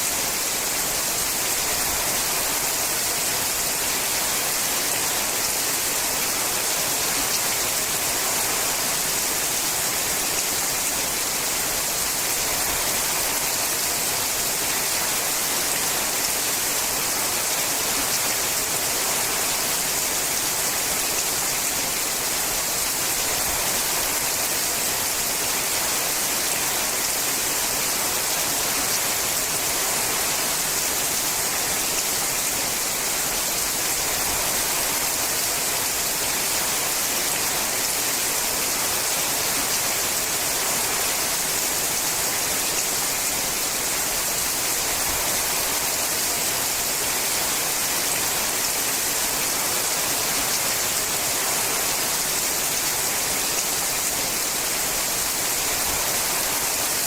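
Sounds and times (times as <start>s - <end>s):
heavy rain on a metal roof: 0.0s - 57.0s.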